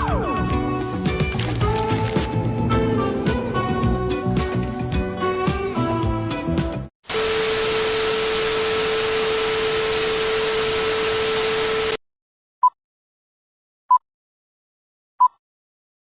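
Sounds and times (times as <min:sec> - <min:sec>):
music: 0:00.0 - 0:06.9
hum tone: 0:07.1 - 0:12.0
static hiss: 0:07.1 - 0:12.0.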